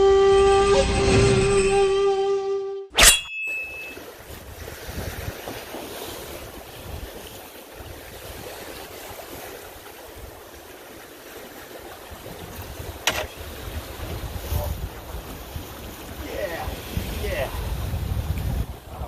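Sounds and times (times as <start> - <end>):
open water washing: 3.0 - 19.0
wind buffeting microphone: 4.2 - 10.6, 11.8 - 19.0.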